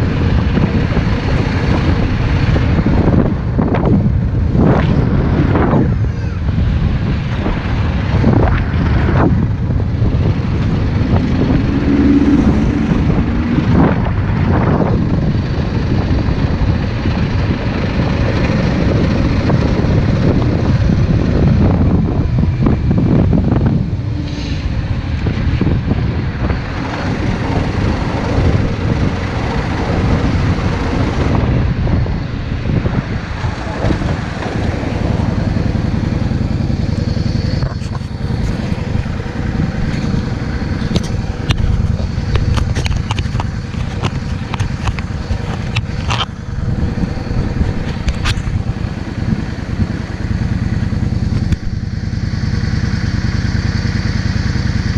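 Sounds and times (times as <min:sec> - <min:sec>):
motorcycle engine revving: 0:00.0 - 0:54.9
wind noise on microphone: 0:00.0 - 0:54.9.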